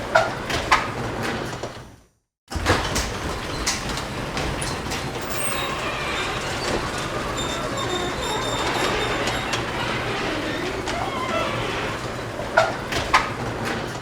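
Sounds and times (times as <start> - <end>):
garage door rumbling and rattling: 2.5 - 14.0
roller clicks: 2.6 - 14.0
high squeal: 5.2 - 12.8.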